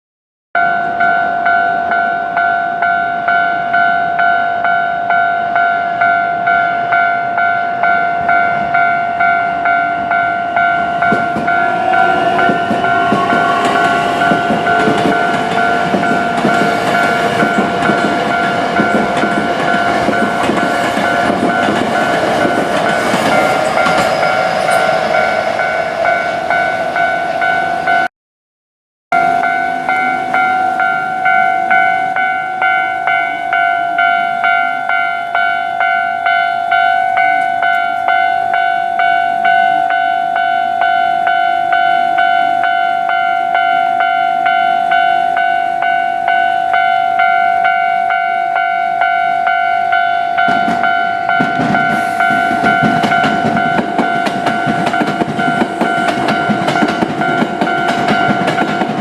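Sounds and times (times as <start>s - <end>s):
level crossing bell two-tone clang: 0.6s - 28.1s, 29.2s - 59.0s
train wheels clattering on rails: 10.0s - 28.1s, 50.3s - 59.0s.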